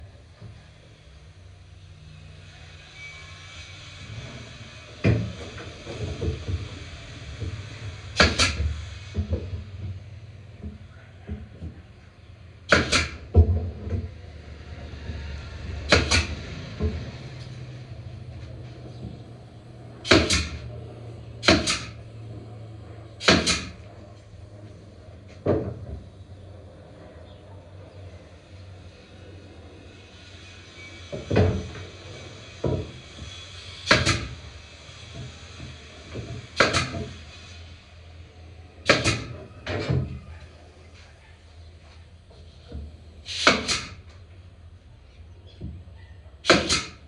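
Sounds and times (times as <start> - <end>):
low steady hum: 0.0 - 43.3
wooden knocks and bangs: 12.7 - 14.2, 25.4 - 26.1.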